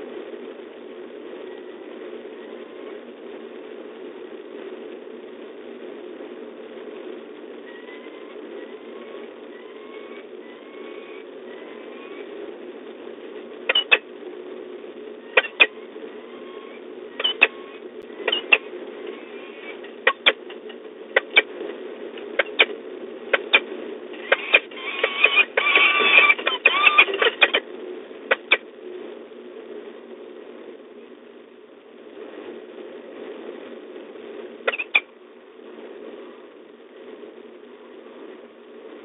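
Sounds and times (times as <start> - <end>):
steady background hum: 0.0 - 39.0
sharp clicks: 13.7 - 14.0, 15.4 - 15.8, 19.7 - 21.6, 22.2 - 27.6, 28.3 - 28.6, 34.7 - 35.1
bird calling: 15.3 - 20.4, 24.2 - 27.6.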